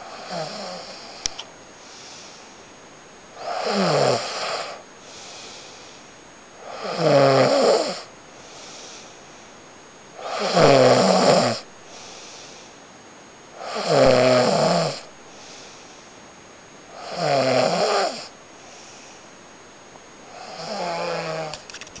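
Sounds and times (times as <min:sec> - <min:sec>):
person snoring: 0:00.0 - 0:01.3, 0:03.4 - 0:05.9, 0:06.6 - 0:09.1, 0:10.2 - 0:12.7, 0:13.6 - 0:15.9, 0:16.9 - 0:19.1, 0:20.3 - 0:21.6
quiet breathing: 0:00.0 - 0:06.9, 0:07.8 - 0:10.5, 0:11.6 - 0:13.9, 0:14.8 - 0:17.2, 0:18.0 - 0:21.5.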